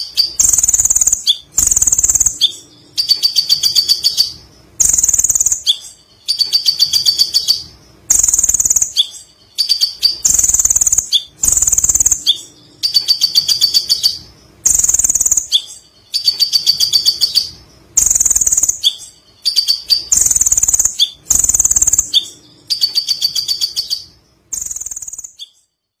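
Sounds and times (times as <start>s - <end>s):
bird chattering: 0.0s - 25.6s.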